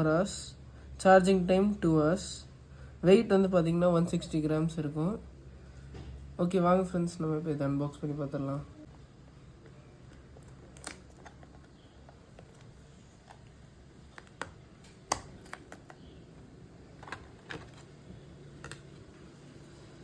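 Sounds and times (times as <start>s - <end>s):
low steady hum: 0.0s - 20.0s
packaging clicks and rustles: 9.0s - 19.3s.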